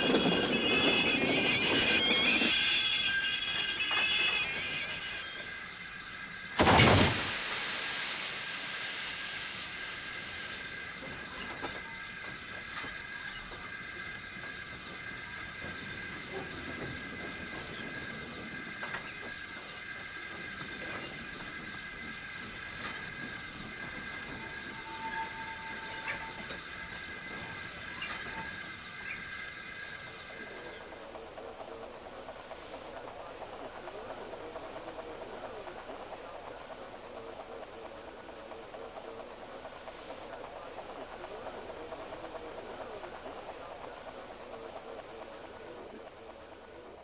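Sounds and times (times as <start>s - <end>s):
train rolling slowly: 0.0s - 47.0s
high-pitched squeal: 6.6s - 11.0s
steam hissing: 6.6s - 11.3s.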